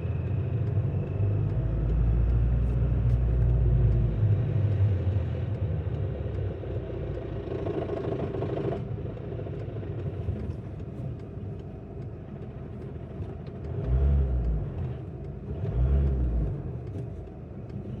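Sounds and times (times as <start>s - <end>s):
engine rattle: 5.8s - 18.0s.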